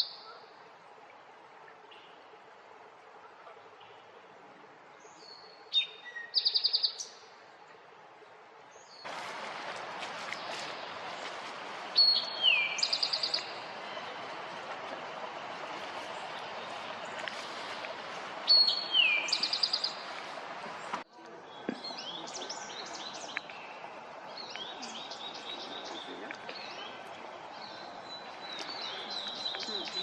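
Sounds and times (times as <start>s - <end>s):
songbird singing: 5.0s - 7.2s, 8.7s - 30.0s
birds chirping: 8.8s - 30.0s.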